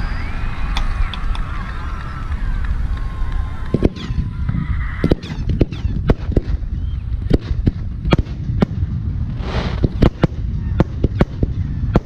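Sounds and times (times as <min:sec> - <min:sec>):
faint firework whistles: 0:00.0 - 0:01.3
steady low rumble: 0:00.0 - 0:12.0.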